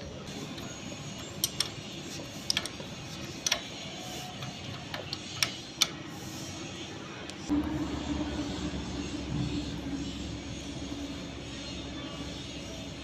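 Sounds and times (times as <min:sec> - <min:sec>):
low steady hum: 0:07.5 - 0:13.0.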